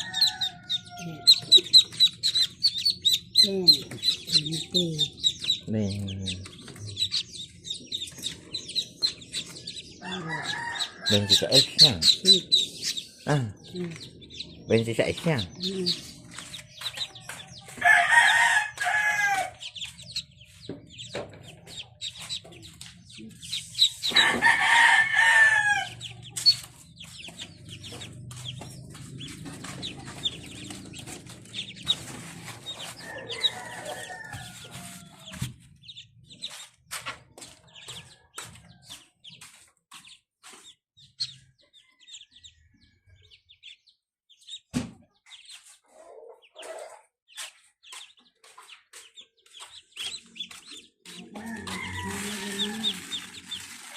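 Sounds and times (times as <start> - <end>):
rooster crowing: 0.0 - 1.8, 10.0 - 11.9, 17.7 - 19.8, 24.0 - 26.1, 32.8 - 35.4, 51.3 - 53.4
ducklings peeping: 0.0 - 53.9.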